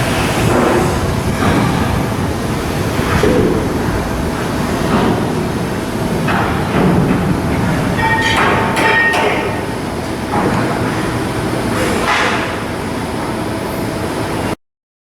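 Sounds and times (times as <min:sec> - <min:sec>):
steady machinery noise: 0:00.0 - 0:14.6
metal knocks: 0:00.4 - 0:11.0
ringing metallic squeal: 0:07.9 - 0:09.7
sharp metal clanks: 0:07.9 - 0:09.8.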